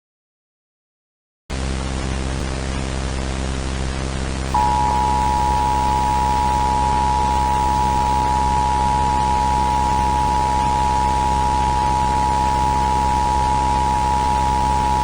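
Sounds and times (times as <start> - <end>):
static hiss with low hum: 2.4 - 15.0
steady two-tone alert beep: 4.6 - 15.0.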